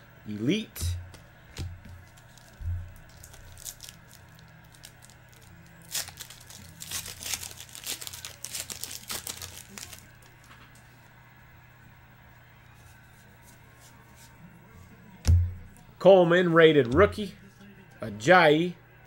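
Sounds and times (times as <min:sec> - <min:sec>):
foil wrapper crinkling and tearing: 0:01.9 - 0:10.6.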